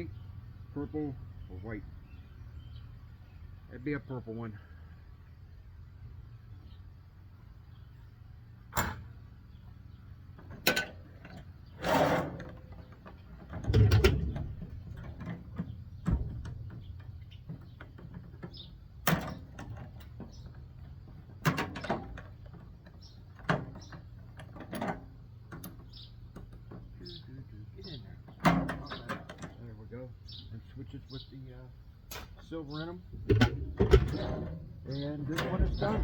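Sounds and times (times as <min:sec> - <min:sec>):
parts clacking and knocking: 0:10.3 - 0:27.0, 0:28.2 - 0:29.7, 0:33.1 - 0:36.0
scraping rustle: 0:11.1 - 0:18.7
heavy clattering thud: 0:33.1 - 0:36.0.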